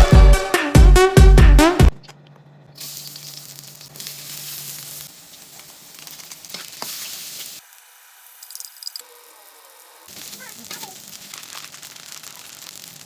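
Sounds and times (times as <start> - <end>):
food sizzling in hot oil: 2.8 - 13.0.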